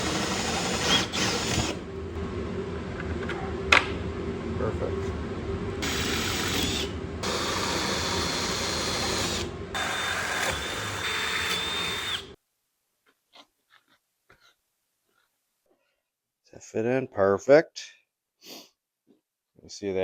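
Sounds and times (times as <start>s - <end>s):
electric power tool whining: 0.0s - 1.8s, 5.8s - 12.4s.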